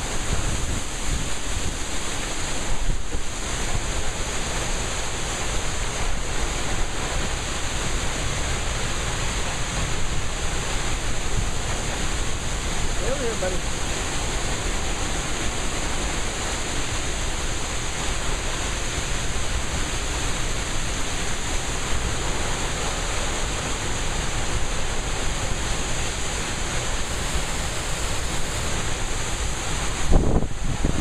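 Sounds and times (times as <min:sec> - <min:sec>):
heavy rain: 0:00.0 - 0:31.0
wind buffeting microphone: 0:00.1 - 0:01.9, 0:27.1 - 0:31.0.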